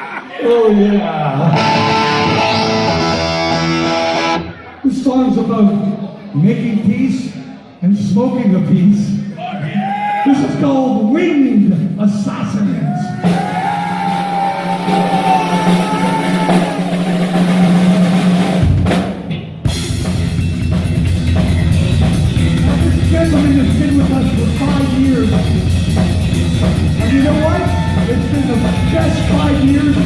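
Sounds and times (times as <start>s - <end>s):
heavy metal band playing live: 1.4s - 4.5s, 13.2s - 30.0s
pounding drum kit: 13.1s - 30.0s.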